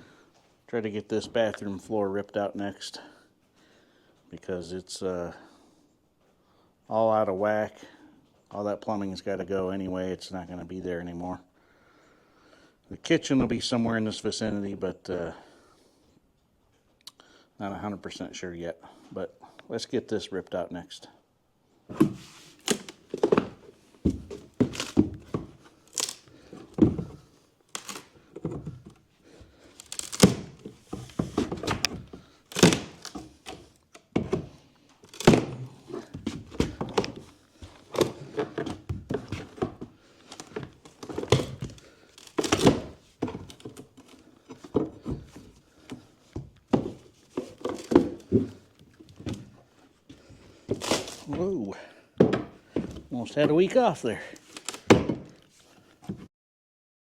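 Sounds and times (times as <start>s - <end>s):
irregular thuds and knocks: 21.9s - 27.4s, 28.2s - 51.5s, 52.2s - 53.1s
boards cracking and tearing: 22.5s - 45.2s, 50.7s - 51.4s, 54.3s - 55.0s.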